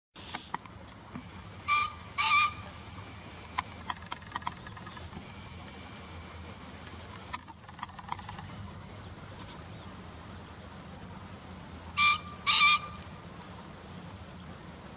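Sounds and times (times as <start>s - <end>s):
pheasant crowing: 1.5s - 5.8s, 12.0s - 13.0s.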